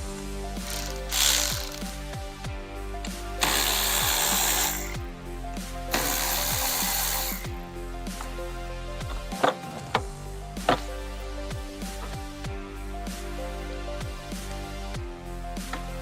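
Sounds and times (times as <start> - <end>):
music with bass beat: 0.0 - 16.0
power tool running: 0.6 - 1.8, 3.4 - 5.0, 5.9 - 7.5.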